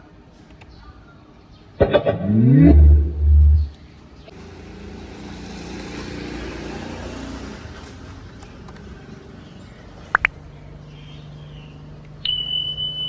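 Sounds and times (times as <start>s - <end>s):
rumbling rush of noise: 1.9s - 8.4s
deep bass tone: 2.0s - 3.8s.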